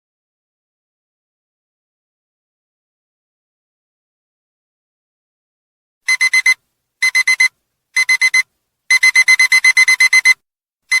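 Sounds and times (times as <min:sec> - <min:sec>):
alarm clock beeping: 0:06.1 - 0:11.0.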